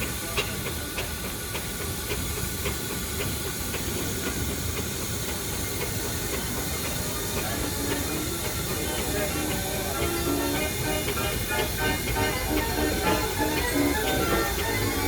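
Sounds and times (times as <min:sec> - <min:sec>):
steam engine hissing: 0:00.0 - 0:15.0.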